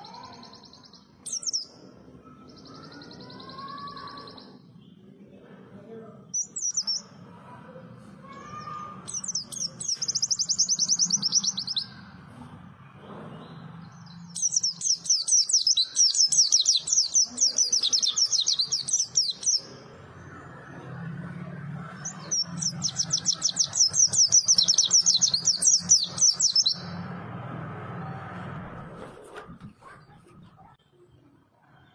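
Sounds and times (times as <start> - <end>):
bird singing high chattering notes: 0.0 - 5.0, 6.3 - 7.2, 8.5 - 12.0, 13.9 - 27.1.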